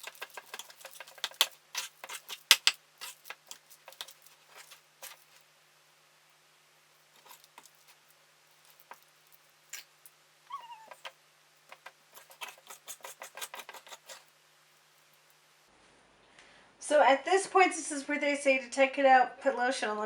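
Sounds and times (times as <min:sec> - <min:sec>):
cat mew: 0:10.5 - 0:11.0.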